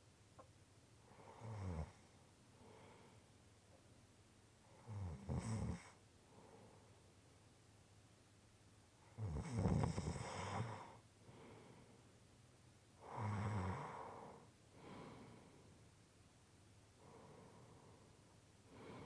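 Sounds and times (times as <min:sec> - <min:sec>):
faint breath: 0:02.5 - 0:03.4, 0:06.3 - 0:07.1, 0:10.5 - 0:12.1, 0:13.8 - 0:15.9, 0:17.0 - 0:19.0.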